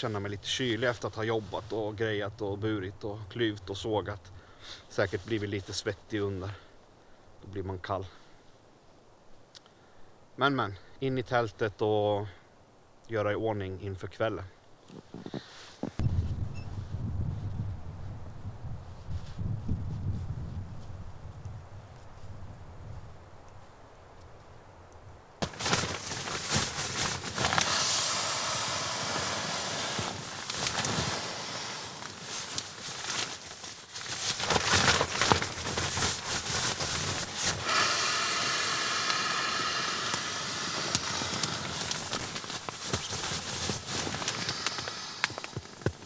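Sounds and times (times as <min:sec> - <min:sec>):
fabric rustling: 0:25.4 - 0:37.8, 0:40.4 - 0:46.0
air hissing into mattress: 0:26.4 - 0:33.0, 0:36.2 - 0:45.8.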